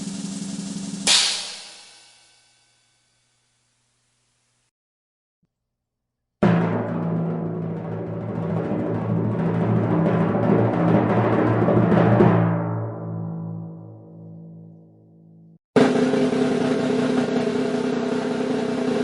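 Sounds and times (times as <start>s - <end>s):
hard timpani stroke ringing: 0.0s - 2.5s, 6.4s - 14.3s
timpani roll: 6.4s - 14.0s.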